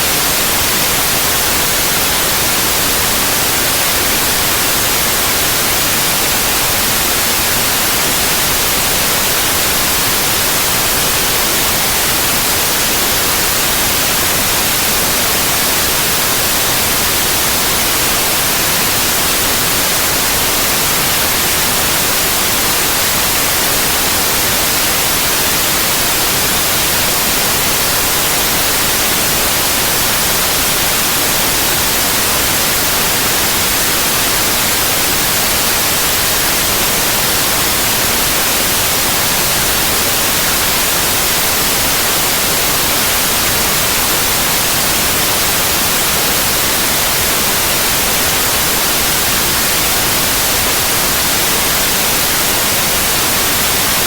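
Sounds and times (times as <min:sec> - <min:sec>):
white noise hiss: 0:00.0 - 0:54.0.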